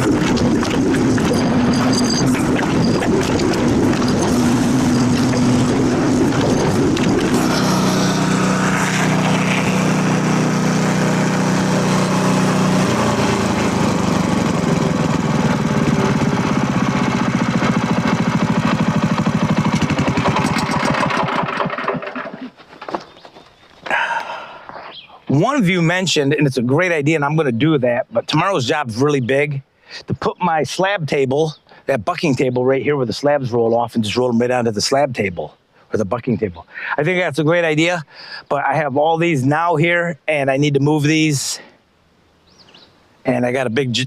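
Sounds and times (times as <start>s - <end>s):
gasoline engine running: 0.0s - 22.6s.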